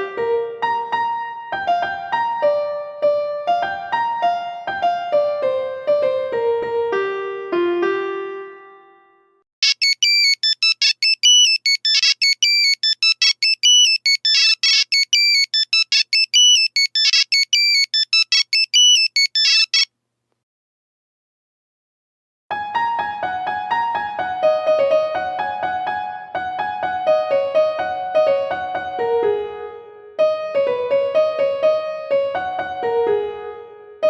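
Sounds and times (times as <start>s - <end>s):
monophonic phone ringtone: 9.6s - 19.9s
ringing piano-like melody: 22.5s - 34.0s.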